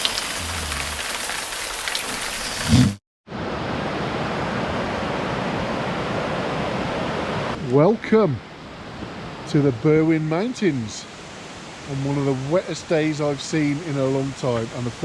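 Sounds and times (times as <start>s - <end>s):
heavy rain falling: 0.0s - 3.0s.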